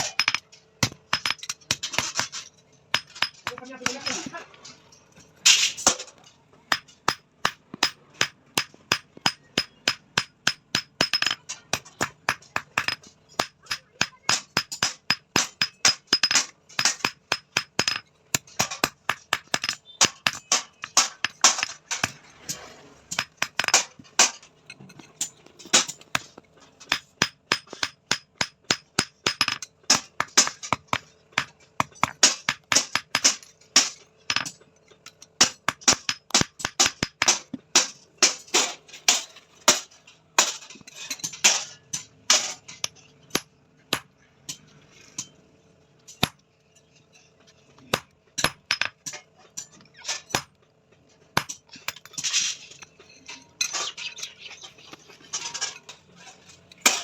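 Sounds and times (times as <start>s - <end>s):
metal ringing: 0.0s - 37.3s
hammer striking steel on anvil: 6.7s - 42.6s.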